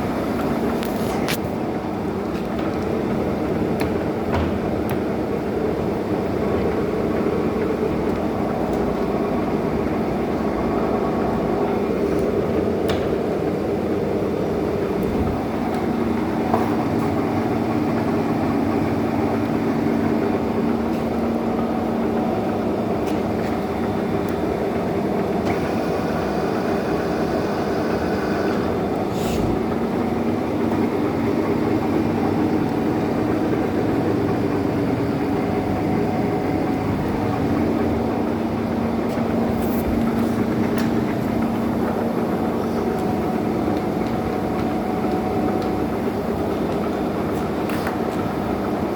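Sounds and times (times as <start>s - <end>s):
lathe mechanical drone: 0.0s - 48.9s.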